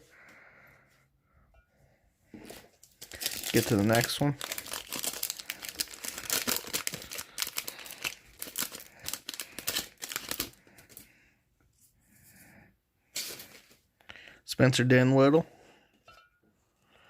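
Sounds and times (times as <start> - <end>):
cards rustling: 2.4 - 11.1
card pack wrapper crinkling and tearing: 2.5 - 11.0.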